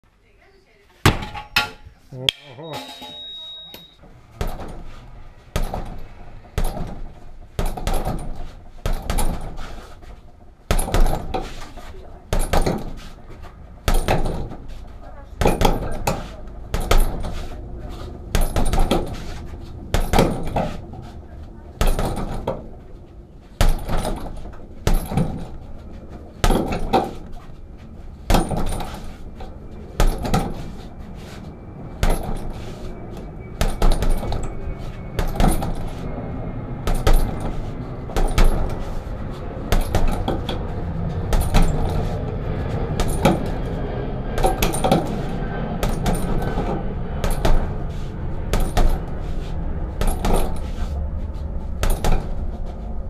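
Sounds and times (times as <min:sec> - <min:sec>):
punches on heavy bag: 0:06.6 - 0:10.1, 0:10.7 - 0:11.7, 0:13.8 - 0:21.0, 0:23.6 - 0:25.6, 0:26.3 - 0:27.4, 0:28.2 - 0:29.2, 0:30.0 - 0:30.9, 0:32.0 - 0:32.7, 0:33.6 - 0:36.0, 0:36.8 - 0:39.0, 0:39.7 - 0:40.4, 0:41.3 - 0:42.1, 0:43.0 - 0:43.6, 0:44.4 - 0:45.2, 0:45.8 - 0:50.9, 0:51.8 - 0:52.6
metallic rattle: 0:36.8 - 0:43.8.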